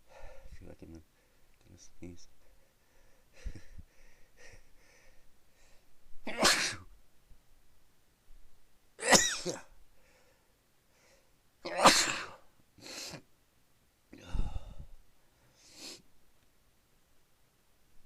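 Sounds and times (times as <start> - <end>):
person breathing: 0.0 - 1.5, 2.4 - 6.0, 10.0 - 11.4, 14.2 - 16.1
person sneezing: 6.3 - 6.9, 9.0 - 9.7, 11.7 - 13.2.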